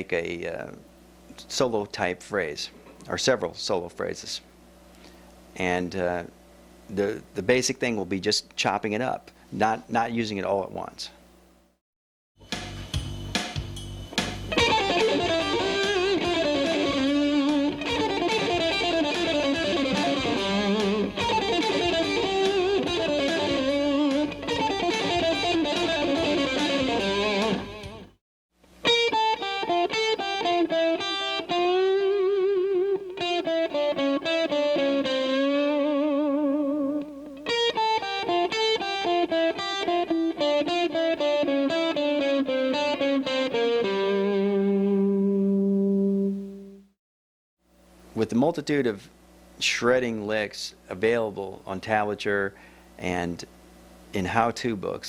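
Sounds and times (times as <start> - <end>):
drum track: 12.4 - 28.1
overdriven electric guitar solo: 14.5 - 28.1, 28.8 - 46.8.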